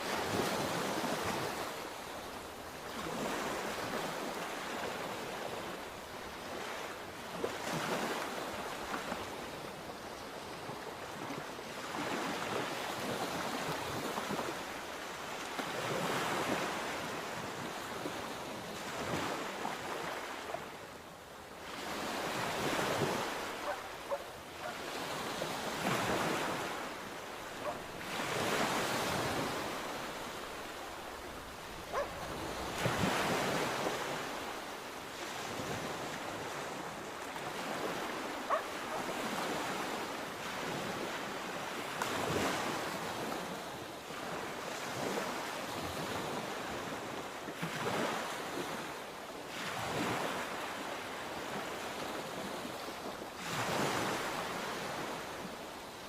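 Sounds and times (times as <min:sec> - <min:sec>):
sea waves breaking: 0:21.6 - 0:48.9.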